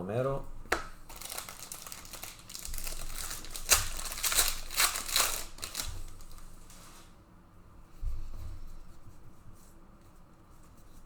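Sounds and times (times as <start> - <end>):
trading cards flipped and rustling: 0.7 - 6.8.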